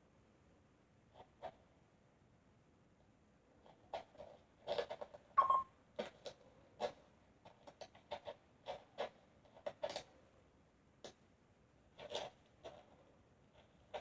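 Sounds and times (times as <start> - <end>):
brief squeak: 5.4 - 5.7.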